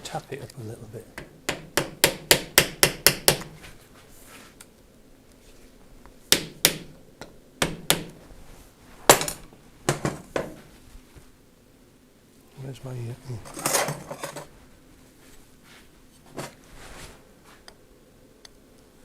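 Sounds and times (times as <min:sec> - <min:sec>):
hammer tapping on metal part: 0:01.2 - 0:03.5.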